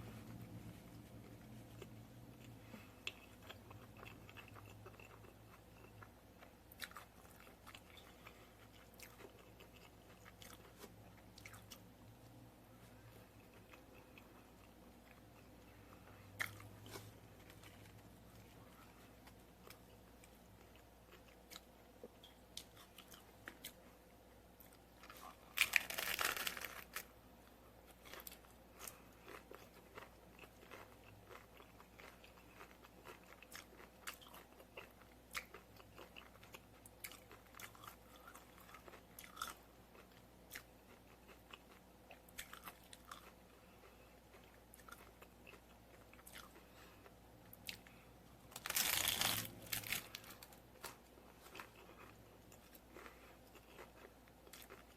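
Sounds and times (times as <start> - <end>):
quiet chewing: 0.1 - 24.0, 49.9 - 54.9
crunchy taco shell bite: 25.5 - 27.1, 48.5 - 50.5.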